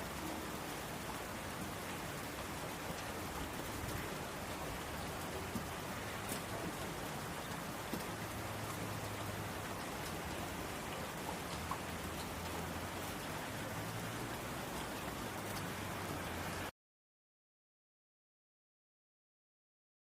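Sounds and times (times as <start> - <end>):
rain on a window: 0.0 - 16.7.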